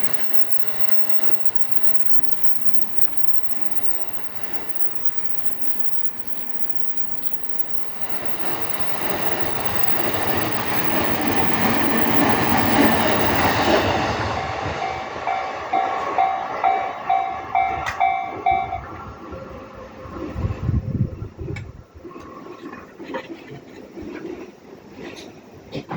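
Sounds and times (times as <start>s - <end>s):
level crossing warning bell dinging: 0.0s - 19.0s
train rumbling past: 0.0s - 25.7s.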